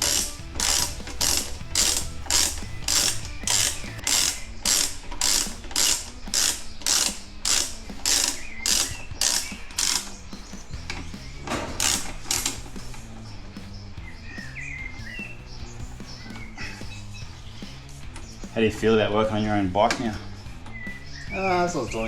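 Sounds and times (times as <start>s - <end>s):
socket ratchet clicking: 0.0s - 10.2s, 11.7s - 12.7s.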